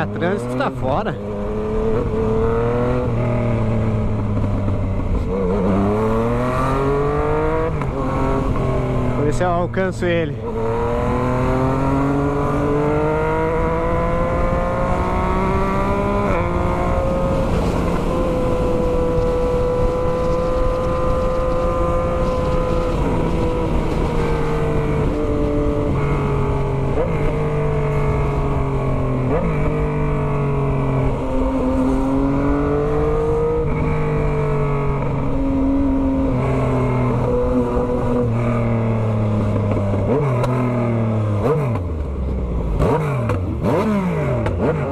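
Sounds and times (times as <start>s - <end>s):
motorcycle engine revving: 0.0s - 44.9s
wind noise: 10.4s - 42.4s.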